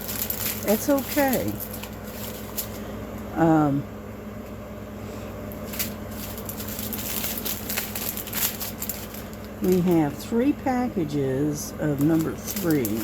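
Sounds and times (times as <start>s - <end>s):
plastic packets clicking and crinkling: 0.0s - 2.9s, 5.5s - 10.6s, 11.6s - 13.0s
steady low hum: 0.0s - 13.0s.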